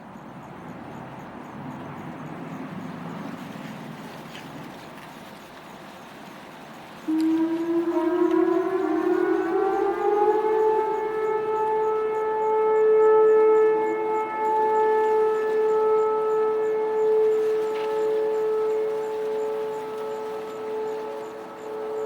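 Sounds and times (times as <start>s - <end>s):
warning sirens winding up and wailing: 6.6s - 22.0s.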